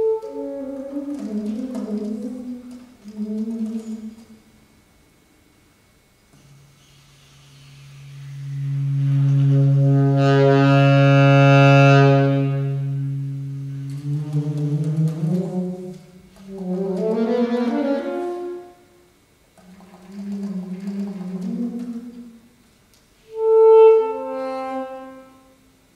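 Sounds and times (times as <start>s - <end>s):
solo saxophone: 0.0s - 4.6s, 6.4s - 25.9s.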